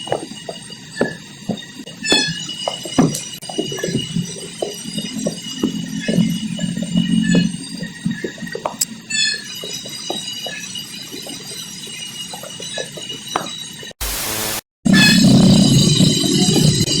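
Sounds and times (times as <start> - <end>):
static-like hiss: 14.0 - 14.6
steady high-pitched tones: 14.0 - 14.6.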